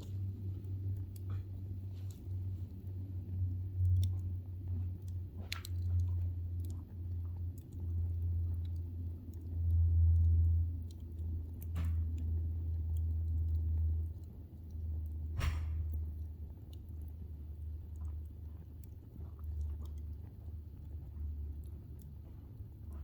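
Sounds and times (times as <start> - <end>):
low steady rumble: 0.0 - 23.0
wood fire crackling: 0.0 - 23.0
sharp pops: 15.4 - 16.0.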